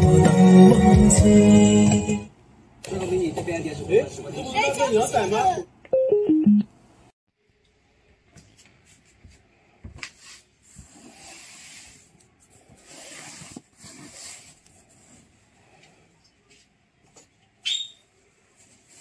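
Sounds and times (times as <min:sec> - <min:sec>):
descending speaker prompt tone: 0:05.9 - 0:06.7.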